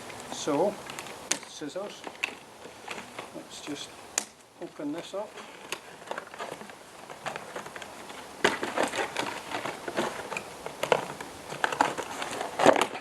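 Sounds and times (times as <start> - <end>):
packaging crinkling: 5.2 - 13.0.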